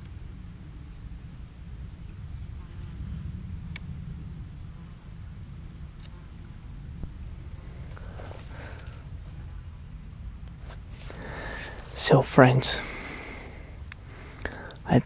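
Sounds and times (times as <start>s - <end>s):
insect high-pitched trill: 0.1s - 9.1s
faint clicks: 7.8s - 9.0s, 13.8s - 14.9s.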